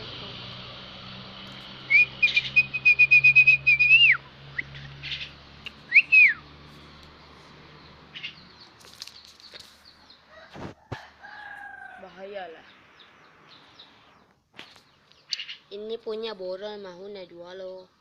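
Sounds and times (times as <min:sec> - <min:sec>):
high whistle: 0:01.9 - 0:04.7, 0:05.9 - 0:06.4.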